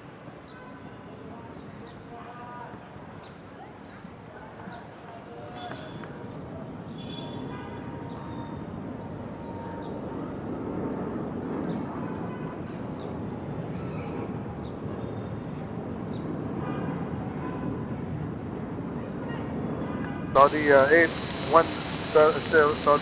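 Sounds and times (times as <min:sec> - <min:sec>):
jet engine noise: 0:20.4 - 0:23.0.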